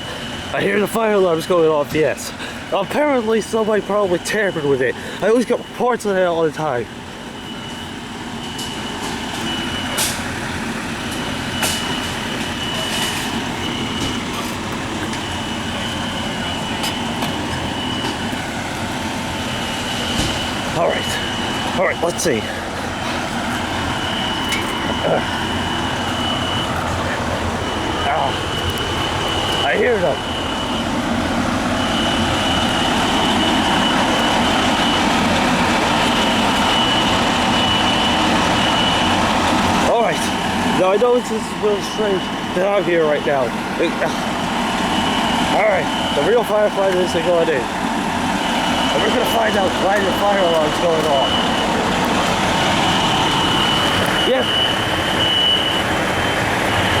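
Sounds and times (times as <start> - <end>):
faint fire alarm tone: 0.0 - 57.0
outdoor traffic noise: 0.0 - 57.0
vehicle rumble: 6.6 - 57.0.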